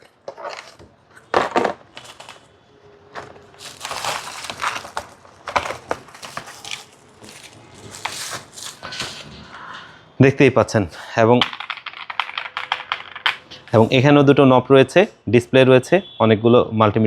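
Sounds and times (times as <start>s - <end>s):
cardboard and wrapping rustling: 0.3s - 2.5s, 3.1s - 9.4s.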